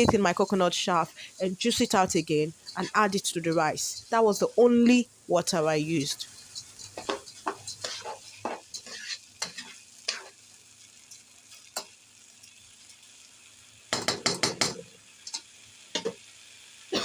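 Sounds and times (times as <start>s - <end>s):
faint sizzle: 0.0s - 17.0s
spoon scraping rice in a pan: 1.4s - 4.3s, 6.0s - 10.4s.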